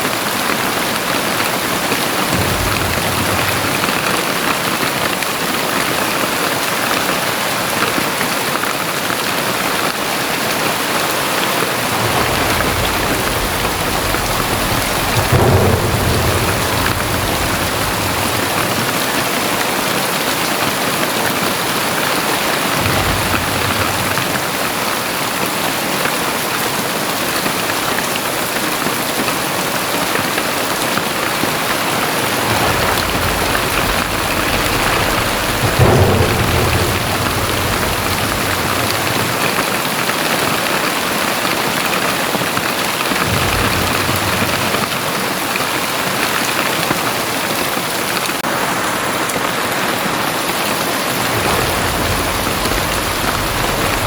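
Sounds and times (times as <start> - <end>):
heavy rain pouring: 0.0 - 54.0
low rumble: 2.2 - 5.4, 11.7 - 20.4, 22.7 - 25.4, 31.2 - 40.3, 43.2 - 45.6, 51.1 - 54.0.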